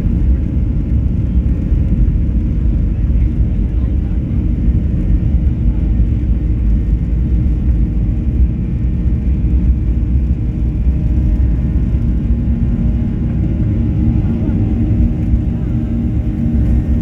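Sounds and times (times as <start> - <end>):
aircraft cabin rumble: 0.0 - 17.0.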